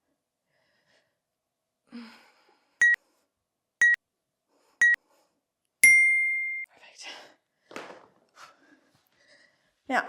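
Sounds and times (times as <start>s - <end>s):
short high timer beeps: 5.8s - 6.7s.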